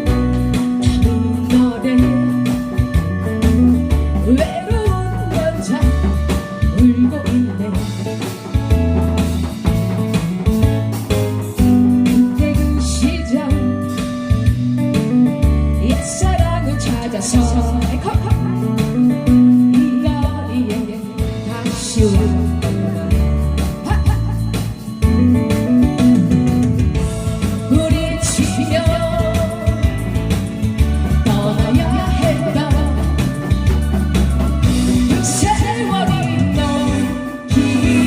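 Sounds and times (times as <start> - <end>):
person singing: 0.0 - 8.5, 15.8 - 24.9, 27.6 - 30.2, 31.1 - 38.0
trot music with drums and guitar: 0.0 - 38.0.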